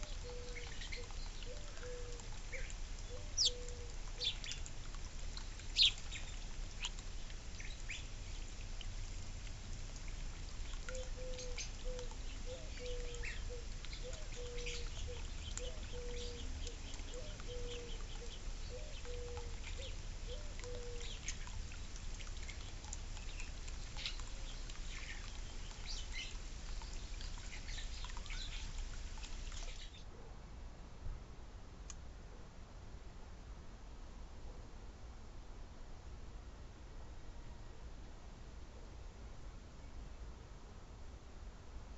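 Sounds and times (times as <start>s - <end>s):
bird repeating low note: 0.0s - 4.6s
fountain water trickling: 0.0s - 30.0s.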